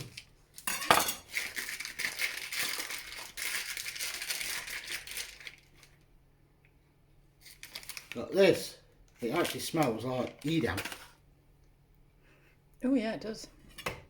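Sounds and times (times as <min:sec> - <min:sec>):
plastic packaging crinkling: 0:00.0 - 0:06.0, 0:07.4 - 0:08.5, 0:09.2 - 0:11.2.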